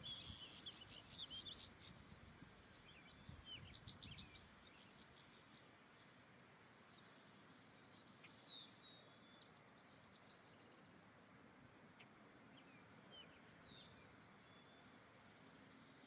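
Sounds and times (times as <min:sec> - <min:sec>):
faint birdsong chirps and whistles: 0:00.0 - 0:02.0.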